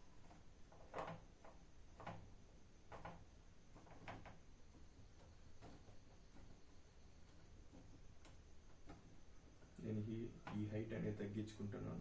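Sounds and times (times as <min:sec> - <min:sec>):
faint ticking clicks: 0:00.2 - 0:10.8.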